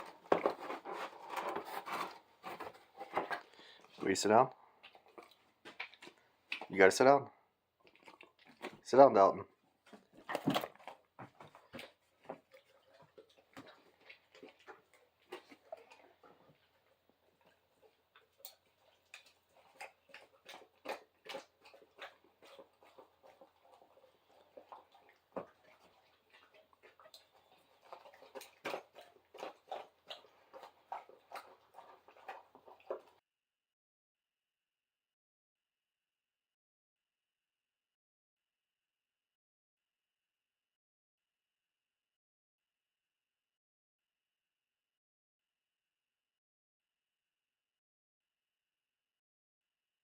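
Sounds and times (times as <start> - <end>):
dog mouth clicks and smacks: 7.8 - 8.8, 17.4 - 33.2.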